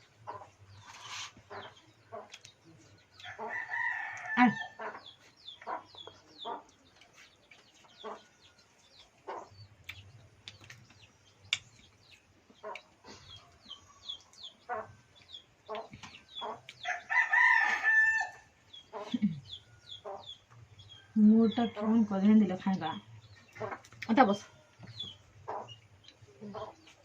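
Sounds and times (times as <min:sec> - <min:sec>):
chickens clucking: 0:00.0 - 0:27.0
chicks peeping: 0:00.0 - 0:27.0
rooster crowing: 0:03.2 - 0:04.8, 0:16.8 - 0:18.5.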